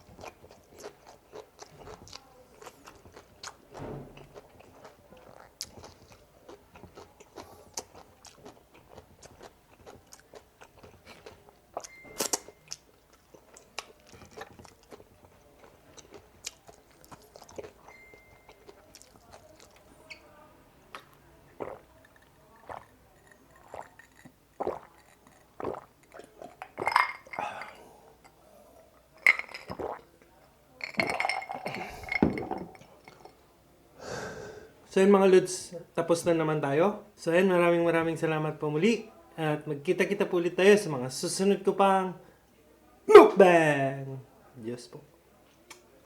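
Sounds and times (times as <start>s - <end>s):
wet chewing and crunching: 0.0s - 20.2s, 20.9s - 27.4s, 29.1s - 30.2s.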